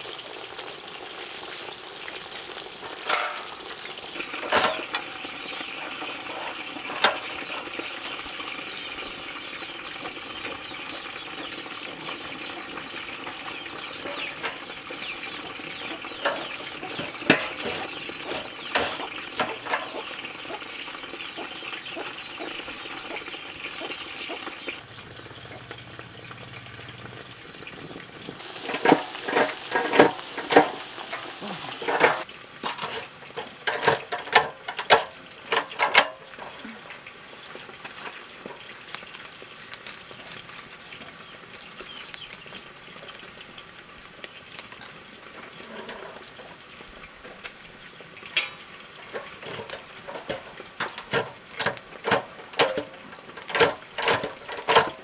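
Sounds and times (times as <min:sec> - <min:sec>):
chips sizzling in hot oil: 0:00.0 - 0:55.0
metal utensil scraping a pan: 0:02.2 - 0:21.9, 0:28.4 - 0:38.7, 0:44.8 - 0:47.6, 0:48.2 - 0:55.0.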